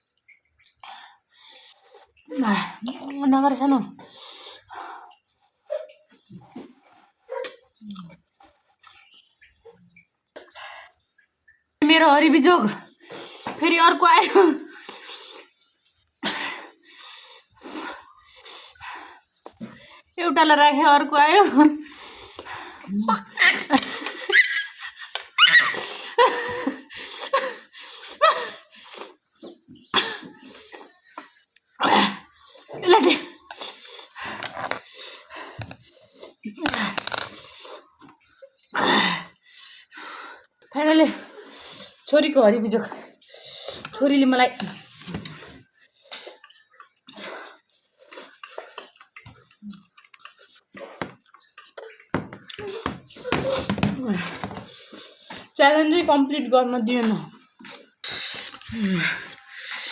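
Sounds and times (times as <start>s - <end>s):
high-pitched laughter: 23.0s - 26.8s
cutlery clinking on a dish: 48.2s - 52.7s.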